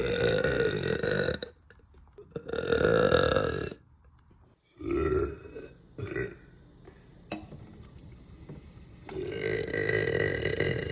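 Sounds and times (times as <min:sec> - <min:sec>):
woman belching: 0:00.0 - 0:01.6, 0:02.3 - 0:03.8, 0:04.8 - 0:06.4, 0:09.2 - 0:10.9.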